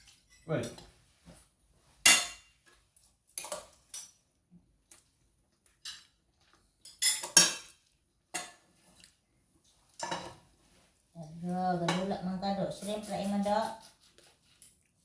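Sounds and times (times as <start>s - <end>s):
cutlery clinking on plates: 2.0s - 4.2s, 6.8s - 8.7s, 9.9s - 10.4s.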